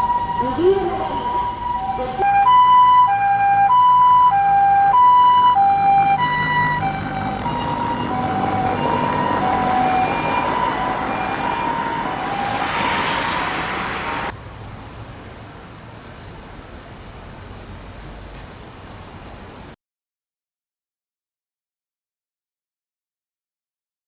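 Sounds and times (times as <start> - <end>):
ambulance hi-lo siren: 0.0 - 14.3
road noise: 0.0 - 19.8.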